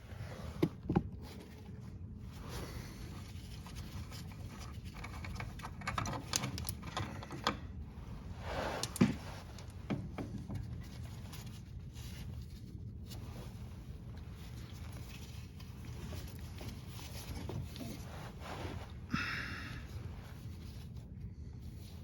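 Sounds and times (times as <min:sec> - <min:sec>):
tools clicking tapping and scraping: 0:04.6 - 0:07.7.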